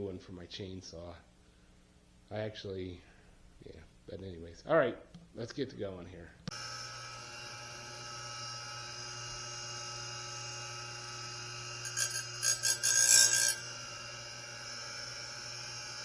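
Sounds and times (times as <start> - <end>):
sharpener scraping saw blade: 11.8 - 13.8.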